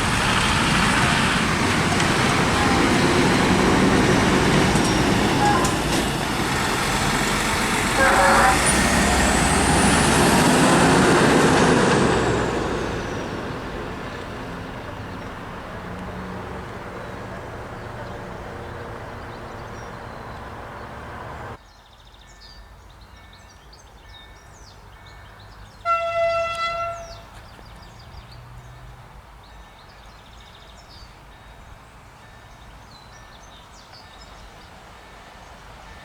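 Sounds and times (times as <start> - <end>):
train horn blast: 0.0 - 21.6, 25.8 - 27.4
train rumble passing: 0.0 - 21.6, 24.9 - 30.2
birdsong: 0.0 - 31.6.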